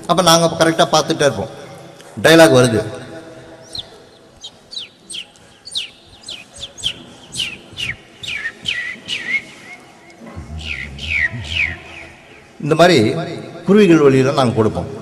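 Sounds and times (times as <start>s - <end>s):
man imitating bird chirps: 4.8s - 12.6s.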